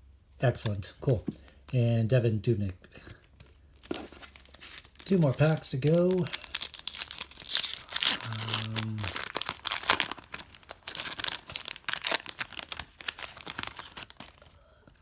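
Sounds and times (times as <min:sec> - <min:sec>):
plastic wrapper crinkling and tearing: 0:03.4 - 0:14.6.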